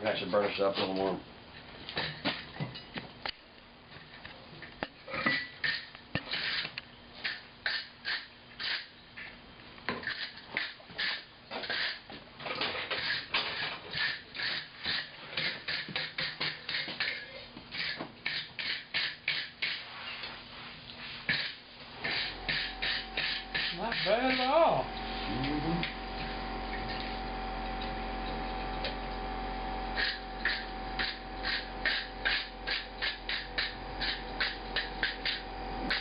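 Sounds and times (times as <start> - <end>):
wire brush scrubbing steel: 21.3 - 26.0, 29.9 - 36.0.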